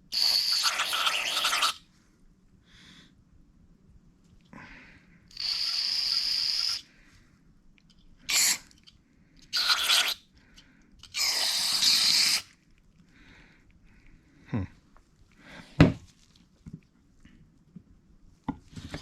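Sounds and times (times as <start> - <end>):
aerosol can spraying: 0.2 - 1.8, 9.5 - 10.2.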